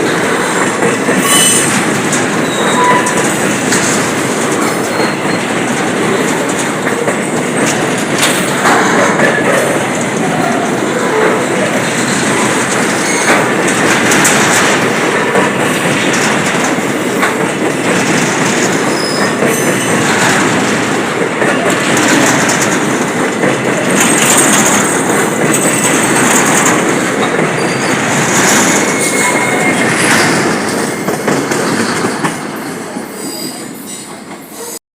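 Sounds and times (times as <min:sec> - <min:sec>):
train wheels clattering on rails: 0:00.0 - 0:34.8
train wheel squeals: 0:01.1 - 0:03.6, 0:04.6 - 0:06.2, 0:10.3 - 0:13.6, 0:18.8 - 0:20.2, 0:27.5 - 0:30.4, 0:33.0 - 0:34.8.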